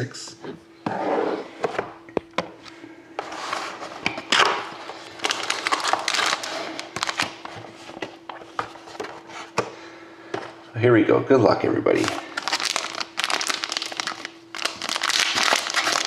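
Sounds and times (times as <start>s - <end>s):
faint steady hum: 0.0s - 16.0s
packaging rustling and scraping: 3.2s - 9.6s, 12.0s - 16.0s.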